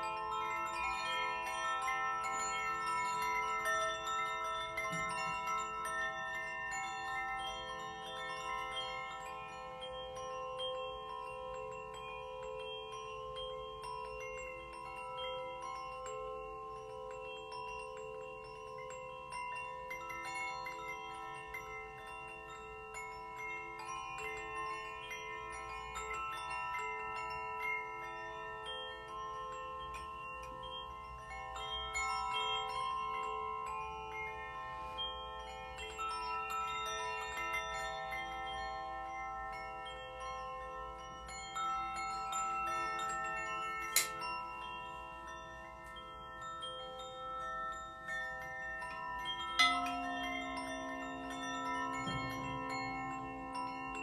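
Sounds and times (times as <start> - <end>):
steel tongue drum notes ringing: 41.2 - 47.1, 47.7 - 54.0.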